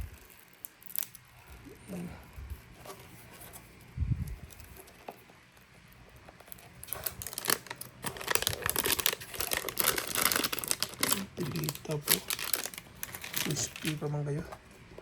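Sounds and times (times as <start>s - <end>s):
packaging crinkling and tearing: 0.0s - 2.0s, 4.2s - 14.8s.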